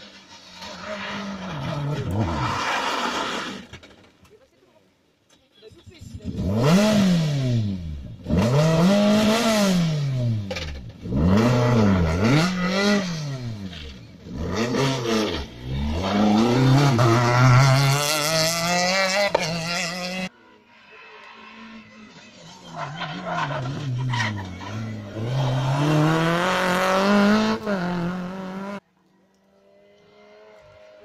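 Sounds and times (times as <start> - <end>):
rally cars at full throttle: 0.0 - 4.3, 5.9 - 31.0.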